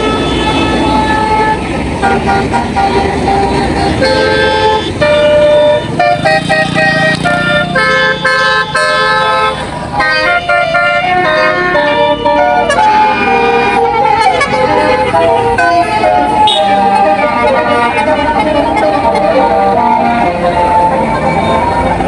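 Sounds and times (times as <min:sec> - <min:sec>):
bus engine running: 0:00.0 - 0:22.0
musical bus horn melody: 0:00.0 - 0:22.0.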